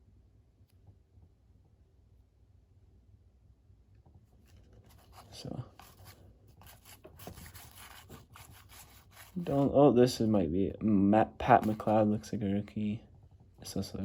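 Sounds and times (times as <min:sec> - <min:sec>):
cards rustling and clicking: 0:04.5 - 0:09.7, 0:11.5 - 0:12.0.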